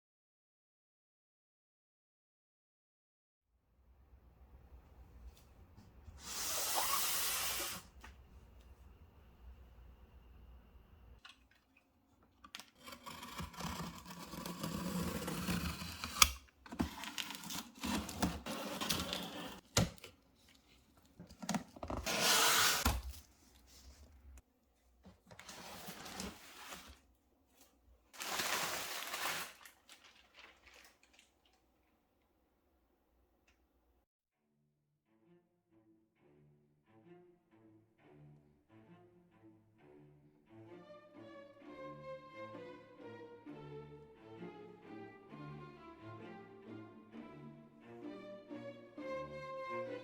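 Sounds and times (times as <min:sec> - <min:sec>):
cardboard and plastic rustling: 0:16.6 - 0:24.4, 0:25.0 - 0:31.2.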